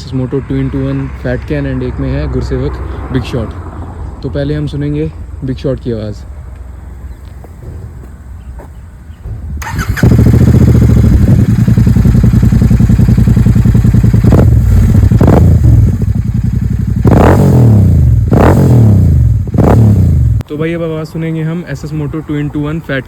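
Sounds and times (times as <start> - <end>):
motorcycle engine revving: 9.6 - 20.4.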